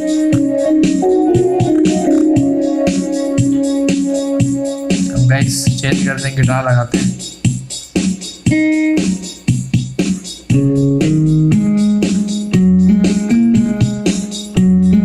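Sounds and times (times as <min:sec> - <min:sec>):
keyboard guitar voice notes: 0:00.0 - 0:07.2
rhythmic beat: 0:00.0 - 0:15.0.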